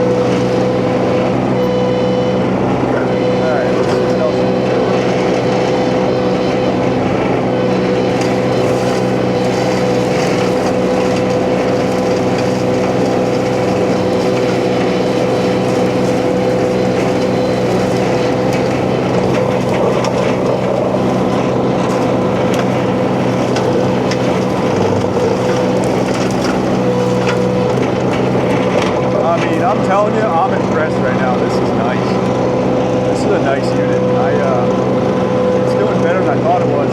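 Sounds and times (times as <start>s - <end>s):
hydraulic flail mulcher whine: 0.0s - 36.9s
skid steer engine running: 0.0s - 36.9s
brush shredding cracks: 7.9s - 32.3s.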